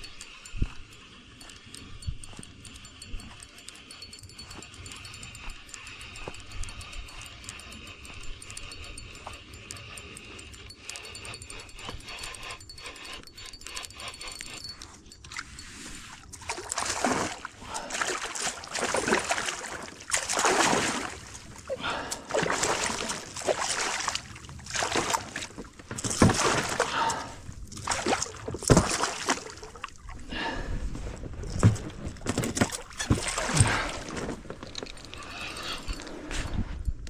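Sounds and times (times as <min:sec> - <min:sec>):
water splashing and swishing: 0:15.2 - 0:36.8.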